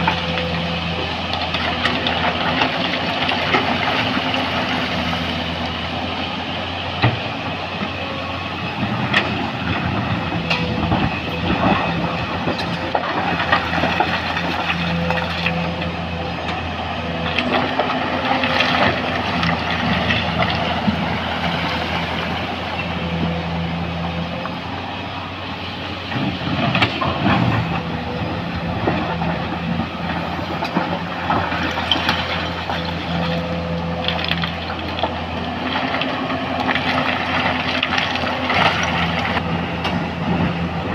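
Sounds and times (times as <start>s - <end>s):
excavator diesel engine: 0.0s - 40.9s.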